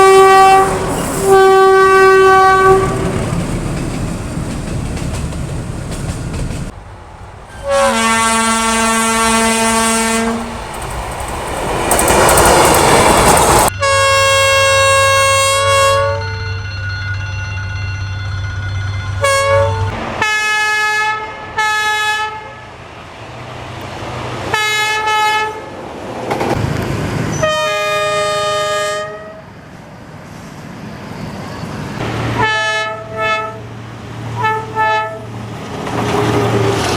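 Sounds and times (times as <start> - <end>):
locomotive horn blasts: 0.0 - 3.2, 7.5 - 10.6, 13.7 - 16.6, 19.2 - 22.7, 24.5 - 25.7, 27.3 - 29.4, 32.4 - 33.6, 34.4 - 35.3.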